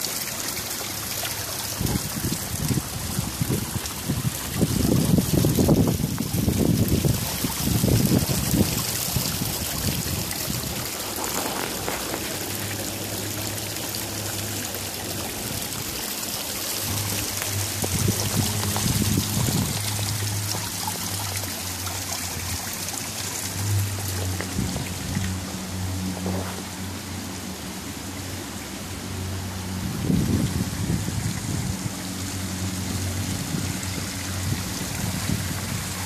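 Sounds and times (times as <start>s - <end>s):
water pouring down waterfall: 0.0s - 36.0s
low rumbles: 1.8s - 36.0s.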